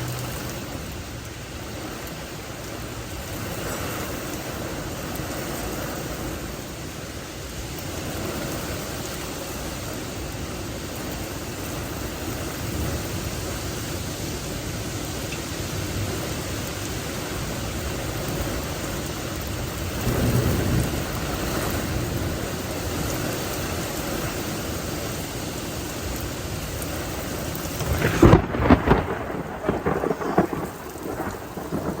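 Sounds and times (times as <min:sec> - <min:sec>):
heavy rain falling: 0:00.0 - 0:32.0
thunderclap rumbling: 0:15.7 - 0:23.4, 0:27.0 - 0:32.0.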